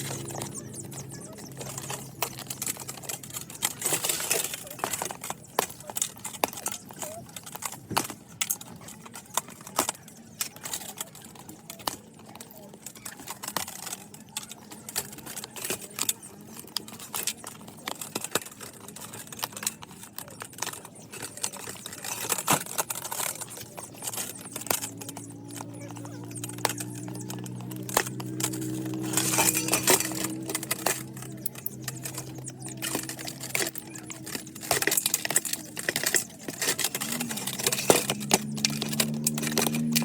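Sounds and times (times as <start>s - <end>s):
electric motor hum: 0.0s - 4.3s.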